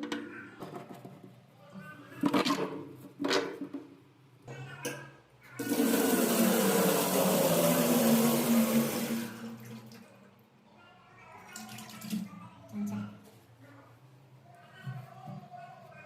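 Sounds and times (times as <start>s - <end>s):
water rushing into a sink: 5.6s - 10.0s.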